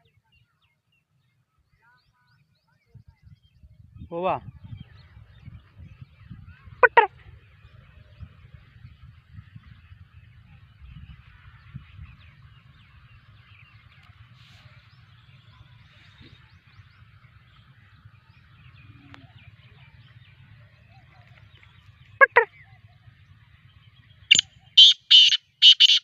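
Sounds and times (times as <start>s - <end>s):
low rumble: 3.1s - 24.8s
small birds chirping: 9.6s - 26.0s.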